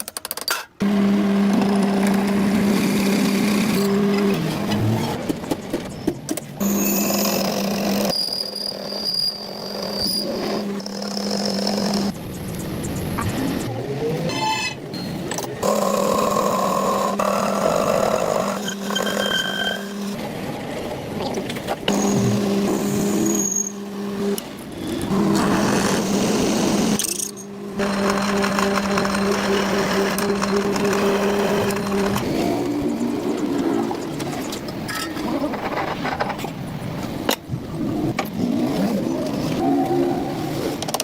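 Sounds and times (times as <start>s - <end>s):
workshop machinery humming: 0.8s - 5.2s, 6.6s - 35.3s
high-pitched machine whine: 6.6s - 20.6s, 21.9s - 35.1s.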